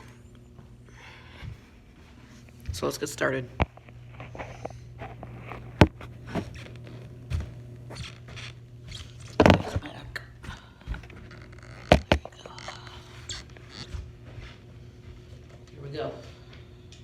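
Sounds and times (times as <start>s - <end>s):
steady low hum: 0.0s - 17.0s
plastic handling knocks and clicks: 11.8s - 12.3s.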